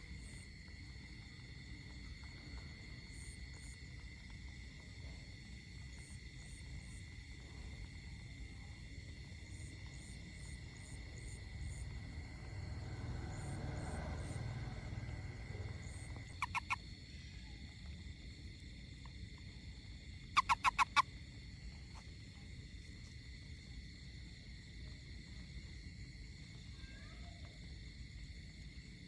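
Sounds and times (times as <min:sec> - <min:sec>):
insects chorus: 0:00.0 - 0:29.0
frog calling in pulses: 0:15.9 - 0:16.8, 0:20.4 - 0:21.1.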